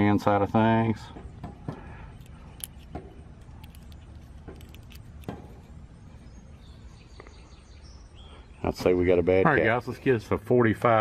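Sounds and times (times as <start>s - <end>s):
small metallic clicks and clinks: 2.2s - 5.6s.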